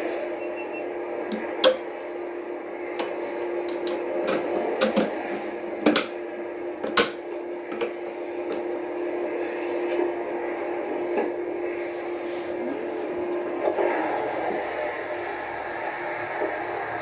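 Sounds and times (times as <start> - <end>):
sharp clicks and knocks: 3.0 - 6.2.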